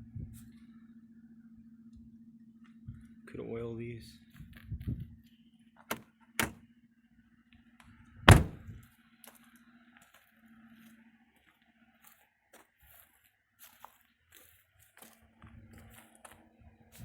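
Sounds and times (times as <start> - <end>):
loud knock: 8.3 - 8.7.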